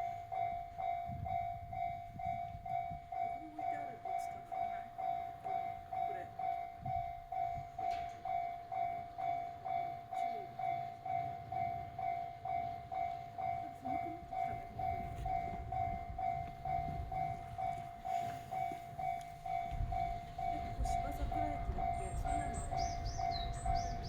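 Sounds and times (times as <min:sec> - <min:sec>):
level crossing warning bell: 0:00.0 - 0:24.0
train rumble passing: 0:10.9 - 0:24.0.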